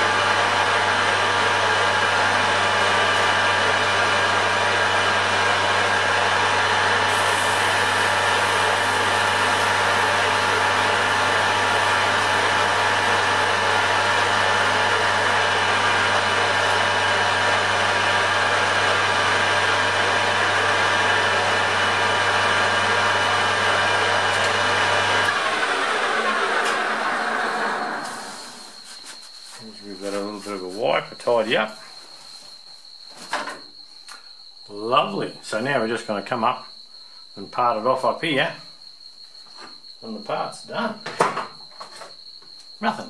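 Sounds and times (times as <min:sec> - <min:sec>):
metal lathe humming and whining: 0:00.0 - 0:28.8
cutting tool hiss: 0:07.0 - 0:16.8, 0:26.6 - 0:30.8.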